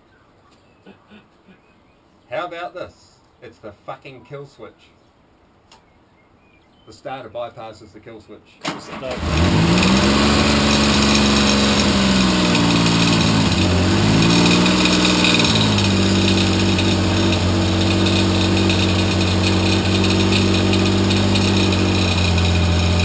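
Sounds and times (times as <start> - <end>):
motorcycle engine idling: 9.2 - 23.0
rubbing noise in engine: 9.2 - 23.0.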